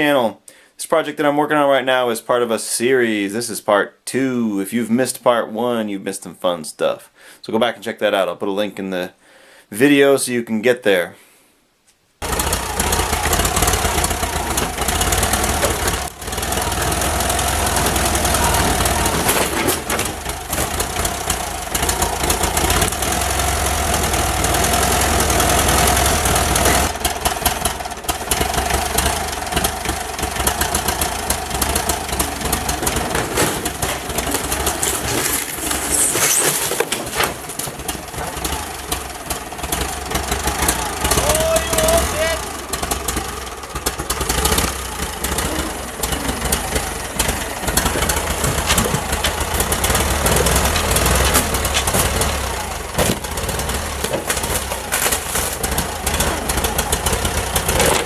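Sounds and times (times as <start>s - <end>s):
tractor engine running roughly: 12.2s - 58.0s.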